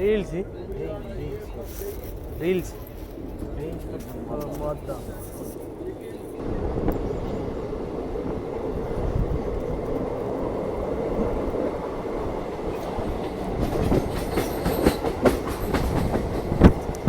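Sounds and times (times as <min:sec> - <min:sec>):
train coaches rumbling: 0:00.0 - 0:17.0
wheels clacking on rail joints: 0:06.4 - 0:17.0.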